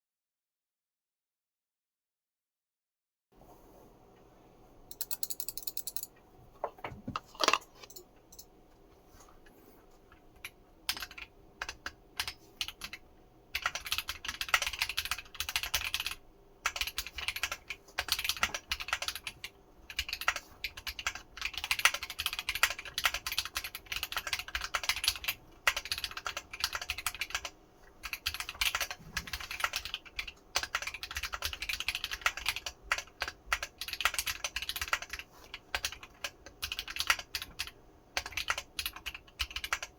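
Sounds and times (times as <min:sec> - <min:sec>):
typing on mechanical keyboard: 0:04.9 - 0:06.1, 0:10.4 - 0:39.9.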